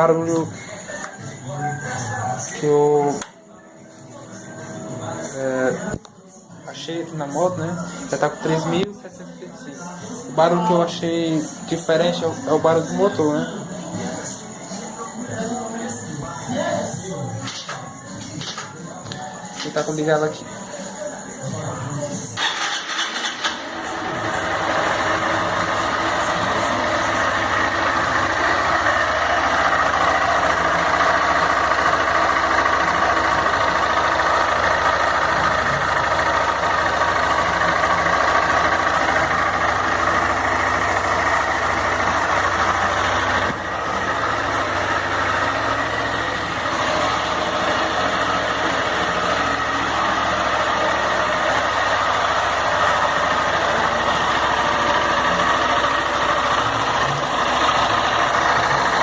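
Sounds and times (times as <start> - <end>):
motorcycle engine idling: 22.4 - 59.0.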